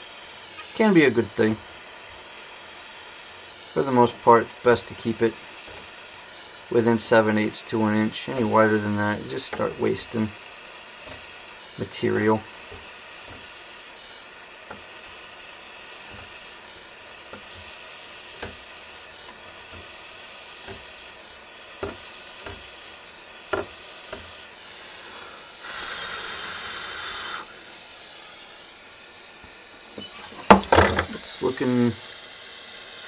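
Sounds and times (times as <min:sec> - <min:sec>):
solder sizzling: 0:00.0 - 0:33.0
steady high hiss: 0:00.0 - 0:33.0.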